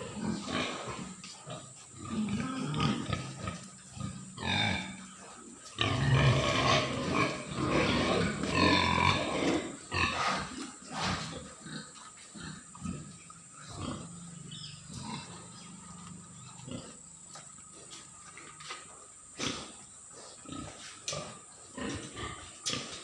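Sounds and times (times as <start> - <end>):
pigs grunting: 0.0 - 23.0
pigs squealing: 1.9 - 11.8.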